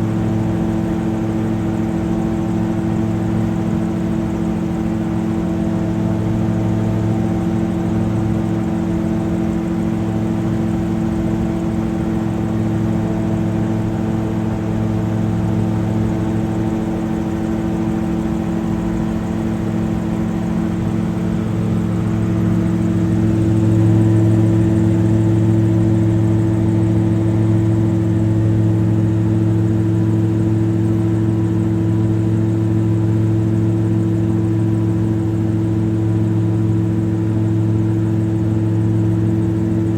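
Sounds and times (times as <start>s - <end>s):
drone propellers humming: 8.0s - 30.8s.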